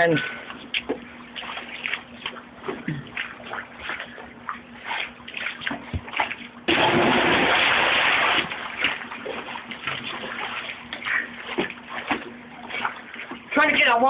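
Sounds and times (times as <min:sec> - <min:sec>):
water sloshing and lapping: 0:00.0 - 0:14.0
body splashing into pool: 0:02.8 - 0:13.5.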